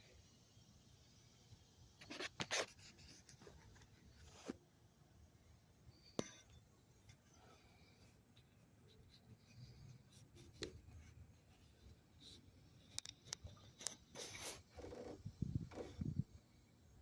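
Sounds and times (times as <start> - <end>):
handling or scratching noises: 6.9 - 16.1.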